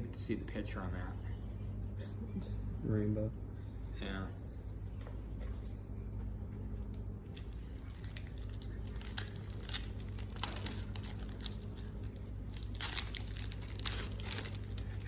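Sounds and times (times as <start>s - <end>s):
plastic wrappers crinkling: 6.8s - 15.0s.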